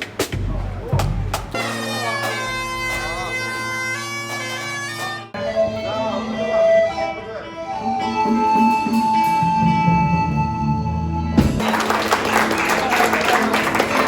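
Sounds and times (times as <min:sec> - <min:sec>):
bagpipes playing: 0:01.6 - 0:09.8
applause: 0:11.6 - 0:14.0.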